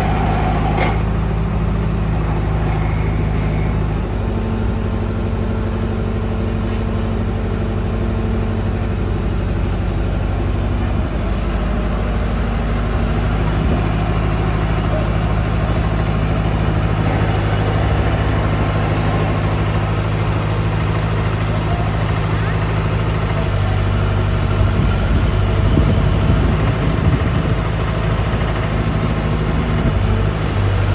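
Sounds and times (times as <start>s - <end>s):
excavator engine running: 0.0s - 30.9s.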